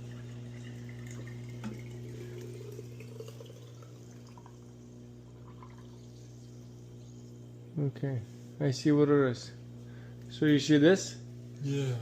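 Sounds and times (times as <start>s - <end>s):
water running and trickling: 0.0s - 7.2s
dishwasher drain pump humming: 0.0s - 12.0s.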